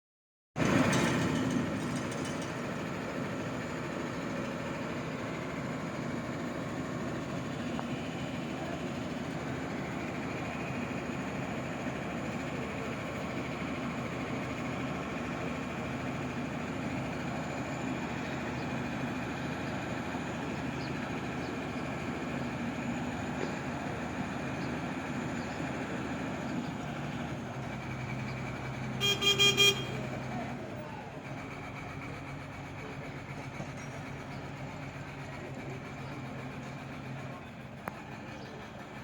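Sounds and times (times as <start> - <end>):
engine and street noise: 0.6 - 39.0
vehicle horn beeping: 28.9 - 30.3.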